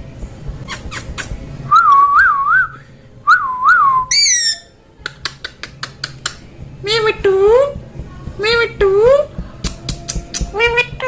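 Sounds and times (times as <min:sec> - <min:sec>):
parrot whistling: 0:00.7 - 0:04.7.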